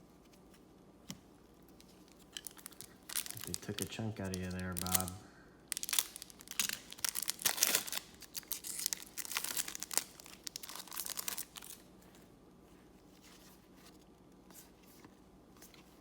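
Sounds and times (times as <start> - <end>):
cards rustling: 1.6 - 12.3
wrapper crinkling: 1.7 - 11.9.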